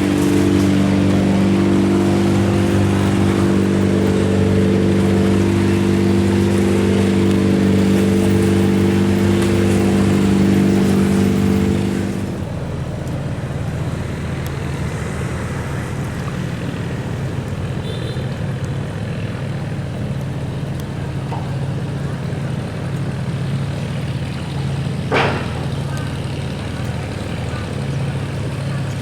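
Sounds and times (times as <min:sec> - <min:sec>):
rushing noise: 0:00.0 - 0:12.5
boat engine running: 0:00.0 - 0:29.0.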